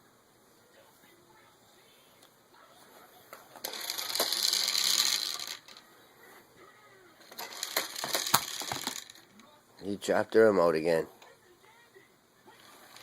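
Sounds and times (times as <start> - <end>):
small hard objects rattling: 3.6 - 5.8, 7.3 - 9.3.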